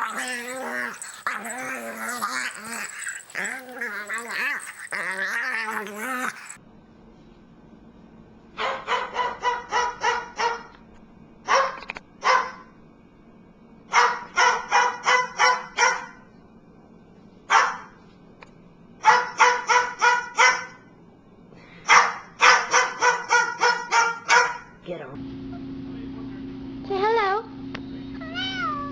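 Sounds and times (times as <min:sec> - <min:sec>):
small dog yapping: 0:00.0 - 0:06.6, 0:19.0 - 0:20.8, 0:21.9 - 0:24.7.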